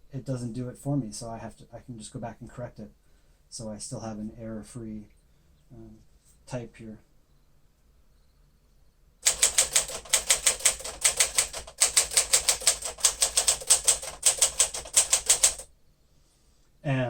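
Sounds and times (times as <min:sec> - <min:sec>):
typewriter key strikes: 0:09.2 - 0:15.7.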